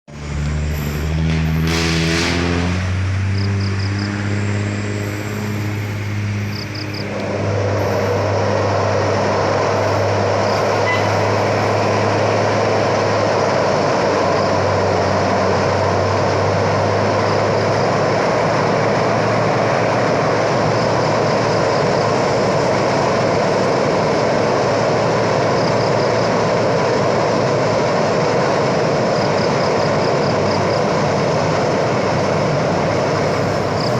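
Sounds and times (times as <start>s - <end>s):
road noise: 0.0s - 33.9s
loud steady rushing noise: 0.1s - 33.9s
vehicle engine running: 0.1s - 33.9s.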